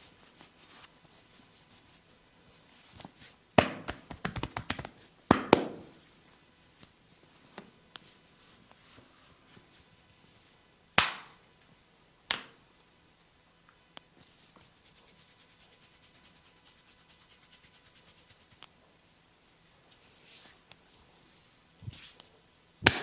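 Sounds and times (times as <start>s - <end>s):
fast patter of hand strokes: 2.7s - 5.1s, 14.2s - 18.7s
hand slaps on head: 3.6s - 5.9s, 11.0s - 11.4s.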